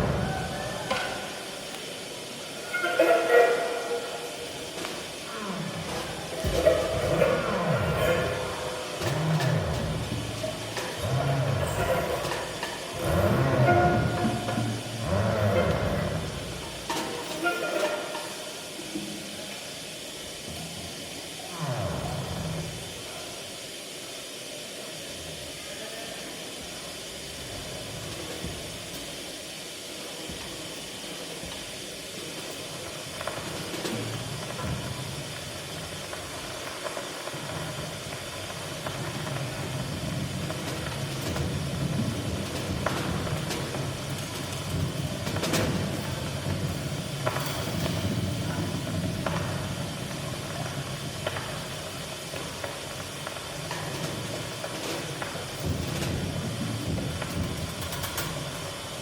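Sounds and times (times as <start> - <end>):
low rumbling drone: 0.0 - 1.4
hissing noise texture: 0.0 - 59.0.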